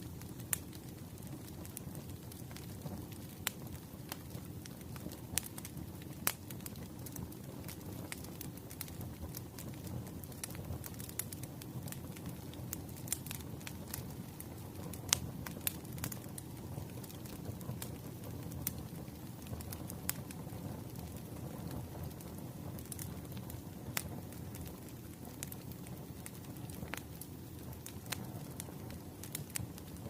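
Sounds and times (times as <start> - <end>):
firewood crackling and popping: 0.0 - 30.0
low rumble of flame: 0.0 - 30.0.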